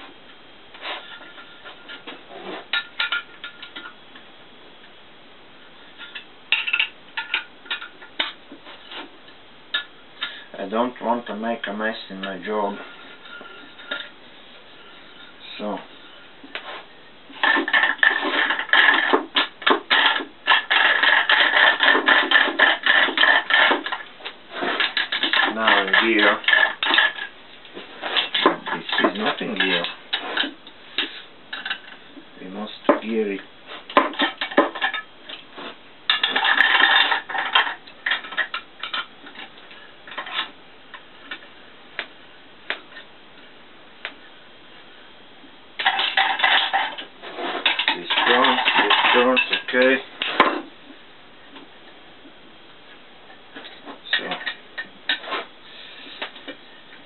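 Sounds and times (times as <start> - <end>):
metal clinks and rattles: 47.6 - 50.0.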